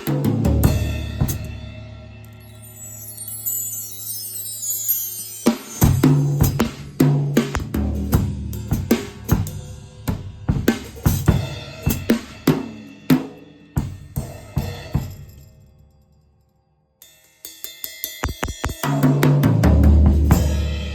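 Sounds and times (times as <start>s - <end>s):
drum kit played with rods: 0.0s - 2.1s, 5.4s - 15.4s, 17.4s - 20.9s.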